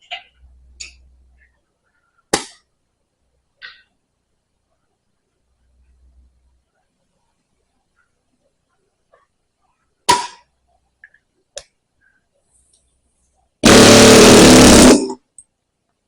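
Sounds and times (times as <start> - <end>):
pneumatic air hammer hammering: 13.6 - 15.2.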